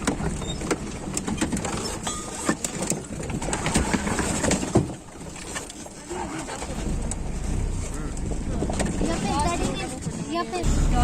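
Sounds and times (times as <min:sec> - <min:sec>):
vehicle body knocking and rattling: 0:00.0 - 0:11.0
vehicle engine running low: 0:06.1 - 0:11.0.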